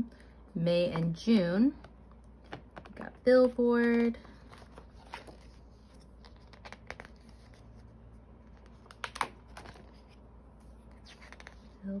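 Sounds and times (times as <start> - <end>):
book pages turning: 3.9 - 11.8
paper rustling: 4.3 - 10.2.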